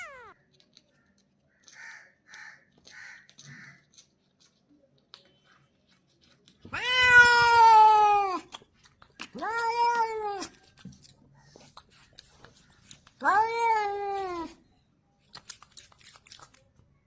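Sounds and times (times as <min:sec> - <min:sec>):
cat meowing: 0:00.0 - 0:00.4, 0:06.6 - 0:08.5, 0:09.4 - 0:10.6, 0:13.2 - 0:14.6.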